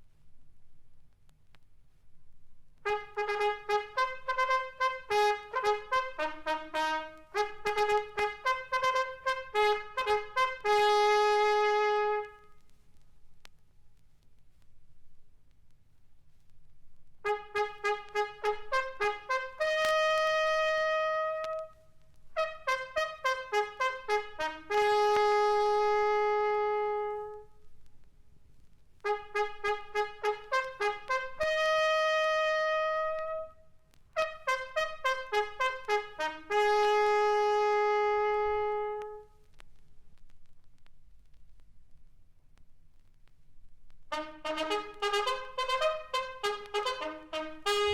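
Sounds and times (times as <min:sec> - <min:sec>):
record surface noise: 0:00.0 - 0:20.4, 0:21.3 - 0:22.8, 0:27.2 - 0:31.3, 0:38.8 - 0:47.9
bugle call: 0:02.9 - 0:12.5, 0:17.3 - 0:21.8, 0:22.4 - 0:27.4, 0:29.0 - 0:33.6, 0:34.2 - 0:39.2, 0:44.1 - 0:47.9.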